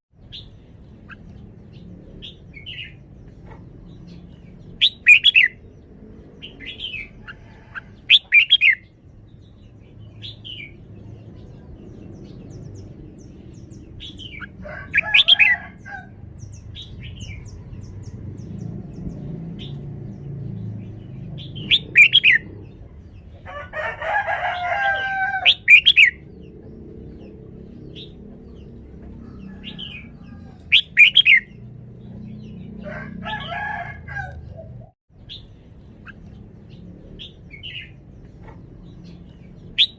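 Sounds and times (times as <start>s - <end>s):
bird whistling song: 4.8s - 5.6s, 8.1s - 8.9s, 21.4s - 22.5s, 25.5s - 26.3s, 30.7s - 31.6s.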